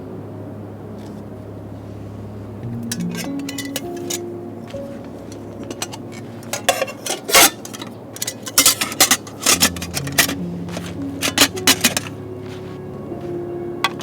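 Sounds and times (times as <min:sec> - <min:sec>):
soft background music: 0:00.0 - 0:14.0
metal cookware clinking and scraping: 0:02.8 - 0:12.2.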